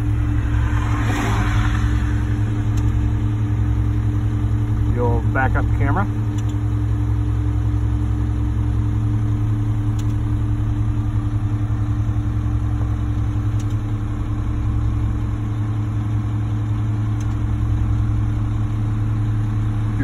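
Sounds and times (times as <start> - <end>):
diesel truck engine idling: 0.0 - 20.0.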